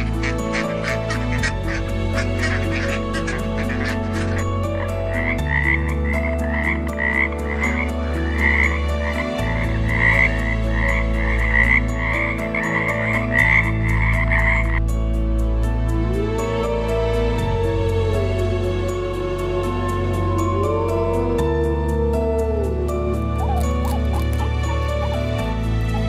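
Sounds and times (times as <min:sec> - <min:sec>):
frog croaking: 0:00.0 - 0:14.8, 0:20.0 - 0:26.0.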